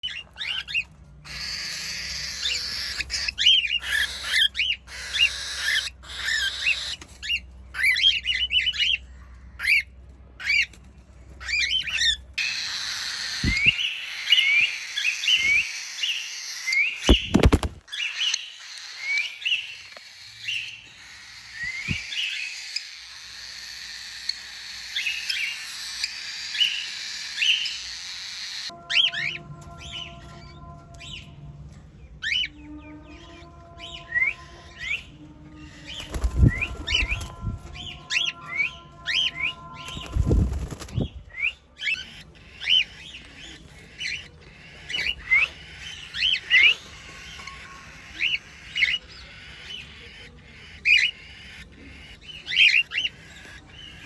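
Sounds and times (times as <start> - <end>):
cockatiels chirping: 0.0 - 10.8, 11.4 - 31.3, 32.2 - 54.0.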